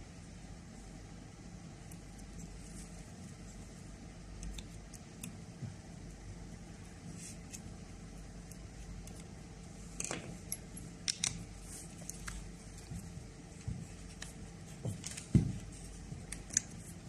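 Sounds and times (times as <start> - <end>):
metallic clicks of small parts: 8.4 - 12.4.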